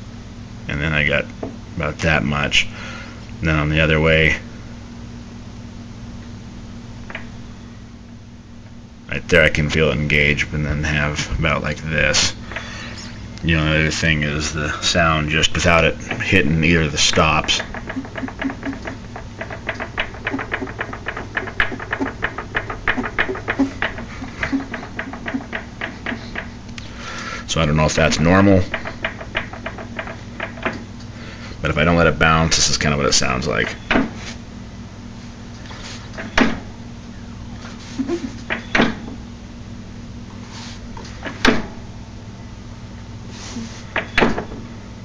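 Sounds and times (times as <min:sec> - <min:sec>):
low hum: 0:04.4 - 0:40.4
wheel drivetrain clicking: 0:17.4 - 0:26.6.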